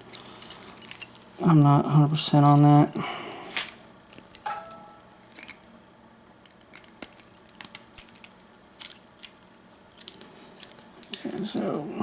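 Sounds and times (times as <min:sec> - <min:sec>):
keys and padlock clinking: 0:00.0 - 0:01.3, 0:02.2 - 0:05.7, 0:06.4 - 0:12.0
metal ringing on metal: 0:04.4 - 0:05.1.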